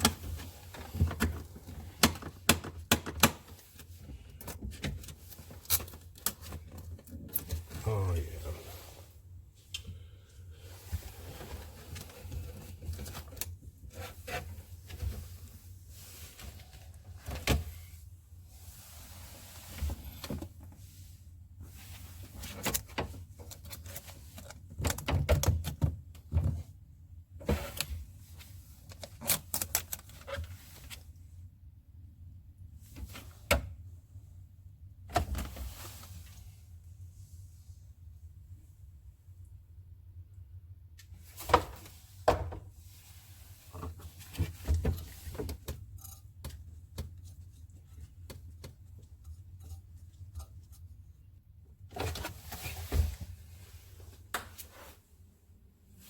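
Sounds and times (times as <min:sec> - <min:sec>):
refrigerator parts clicking and knocking: 0:00.0 - 0:07.8, 0:22.4 - 0:26.7, 0:41.3 - 0:42.7, 0:43.8 - 0:50.9.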